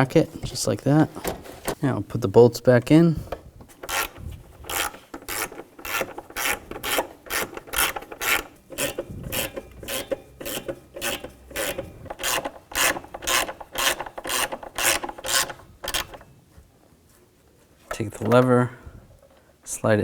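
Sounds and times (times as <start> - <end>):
hand ratchet clicking: 3.8 - 16.2.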